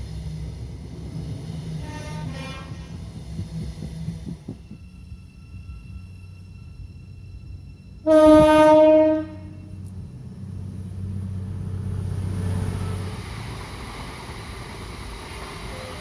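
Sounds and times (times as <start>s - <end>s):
train rumbling past: 0.0s - 16.0s
train horn blast: 1.8s - 3.0s, 8.0s - 9.8s.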